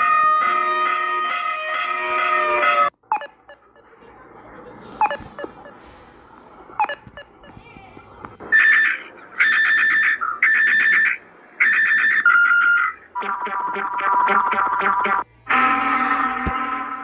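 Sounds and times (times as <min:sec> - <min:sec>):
loud electronic alarm tone bursts: 0:09.7 - 0:17.0.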